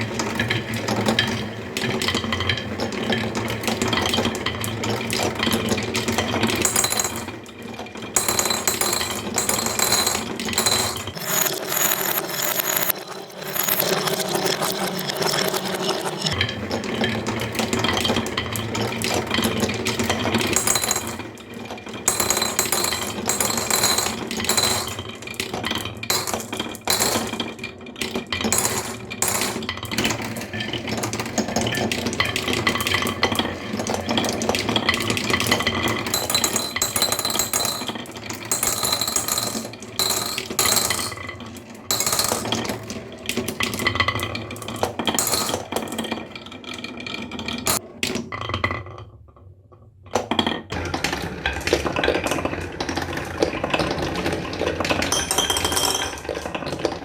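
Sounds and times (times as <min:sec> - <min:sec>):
small hard objects clinking: 0:08.2 - 0:16.4, 0:22.1 - 0:25.2, 0:26.0 - 0:27.5, 0:34.9 - 0:42.8.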